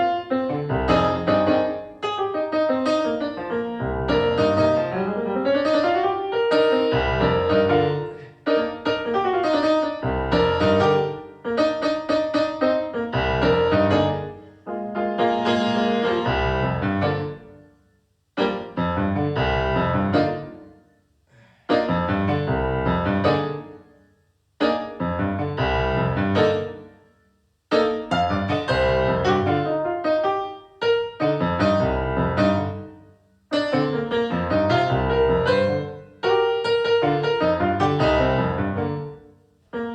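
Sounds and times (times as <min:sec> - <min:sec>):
piano music: 0:00.0 - 0:17.8, 0:18.4 - 0:20.9, 0:21.7 - 0:24.0, 0:24.6 - 0:39.9.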